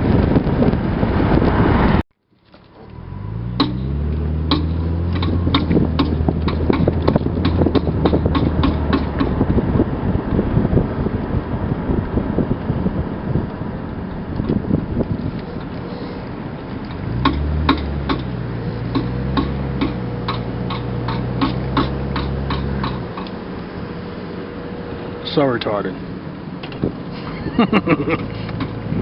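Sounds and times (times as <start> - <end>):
car engine pulling away: 0.0 - 29.0
road noise: 0.0 - 29.0
sharp clicking from wheel: 3.6 - 9.4, 15.2 - 23.4.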